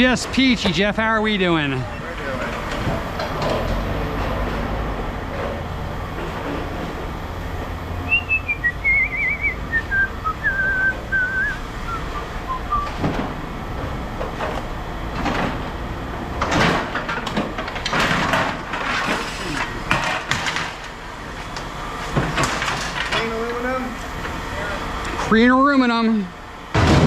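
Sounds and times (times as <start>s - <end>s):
person whistling a tune: 8.1s - 13.0s.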